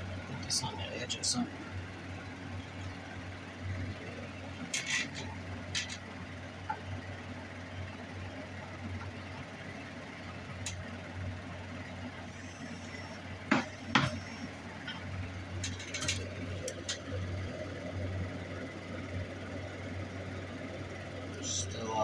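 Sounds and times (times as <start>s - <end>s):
steady low hum: 0.0s - 22.0s
sharp knocks on bench: 13.5s - 14.2s.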